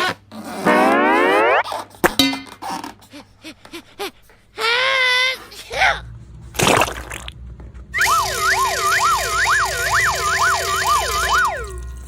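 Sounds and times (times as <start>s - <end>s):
siren-like wail: 0.7s - 1.6s, 8.0s - 12.0s.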